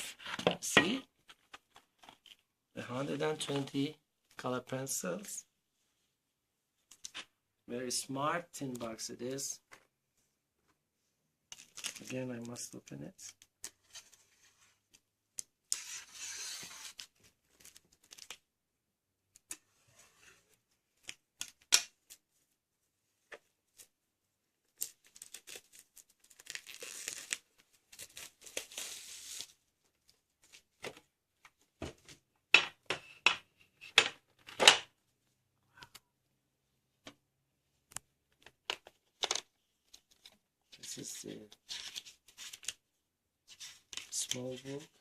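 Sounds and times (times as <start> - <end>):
wrapping tearing and rustling: 24.8 - 29.5.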